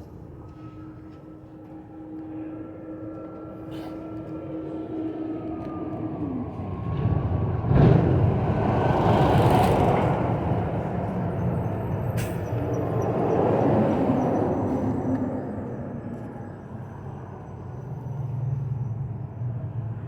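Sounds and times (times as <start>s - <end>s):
vehicle passing: 5.0s - 16.1s.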